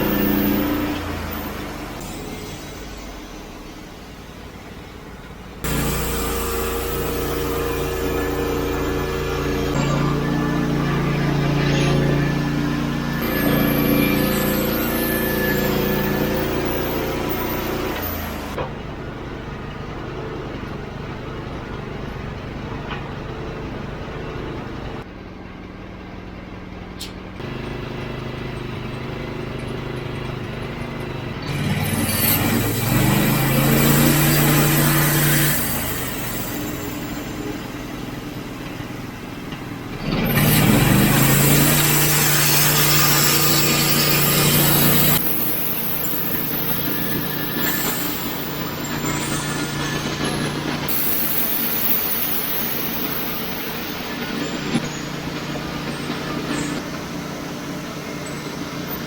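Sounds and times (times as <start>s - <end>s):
band saw cutting log: 0.0s - 2.7s, 5.6s - 18.7s, 30.9s - 38.8s, 39.9s - 59.0s
gas engine running: 0.0s - 59.0s.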